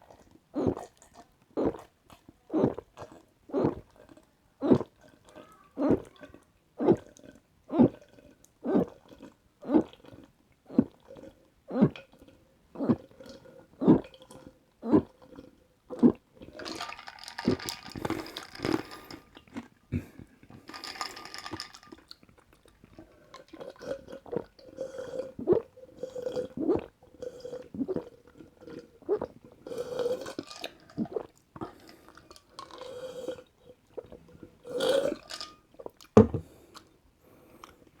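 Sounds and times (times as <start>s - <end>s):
person gulping a drink: 0.0s - 37.0s
noisy sips: 16.0s - 21.6s.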